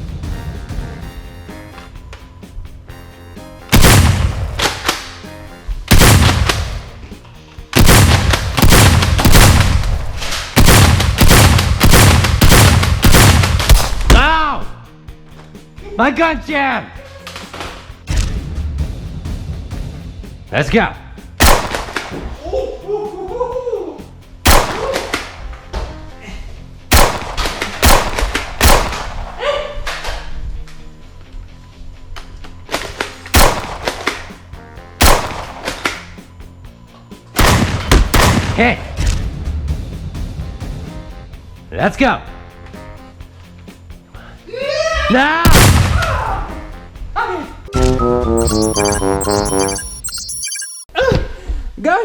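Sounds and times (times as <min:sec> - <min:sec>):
background music: 0:00.0 - 0:50.8
automatic gunfire bursts: 0:10.6 - 0:13.6.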